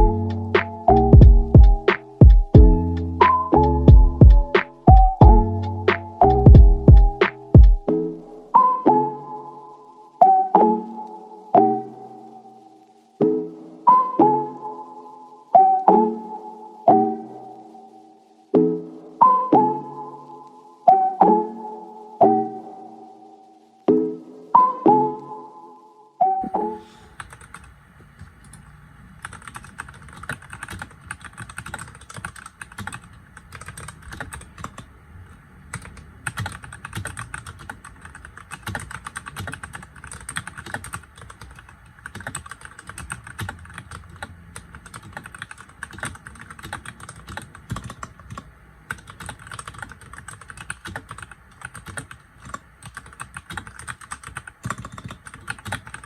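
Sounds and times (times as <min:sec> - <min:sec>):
mechanical keyboard typing: 0:27.2 - 0:34.9, 0:35.7 - 0:56.0.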